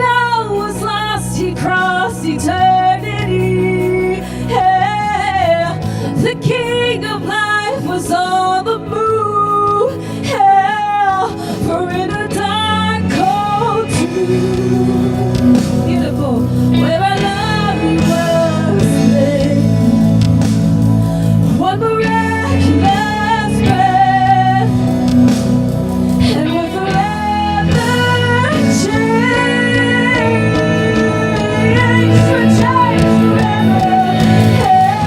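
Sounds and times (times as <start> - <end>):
band with guitar playing: 0.0 - 35.0
people singing: 10.3 - 20.0, 26.2 - 35.0.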